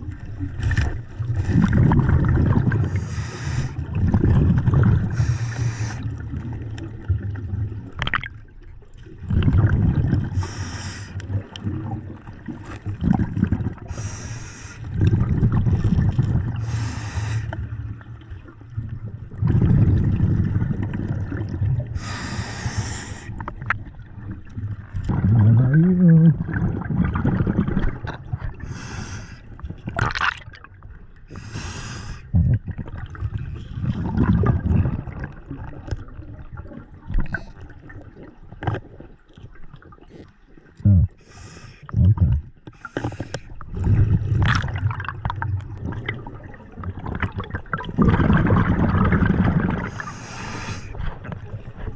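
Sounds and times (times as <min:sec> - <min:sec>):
exhaled bubbles rumbling: 0:00.0 - 0:51.9
regulator hissing inhales: 0:03.0 - 0:03.8, 0:05.2 - 0:06.0, 0:10.4 - 0:11.2, 0:13.9 - 0:14.9, 0:16.6 - 0:17.6, 0:22.0 - 0:23.3, 0:28.7 - 0:29.5, 0:31.3 - 0:32.3, 0:41.2 - 0:41.8, 0:50.0 - 0:51.0.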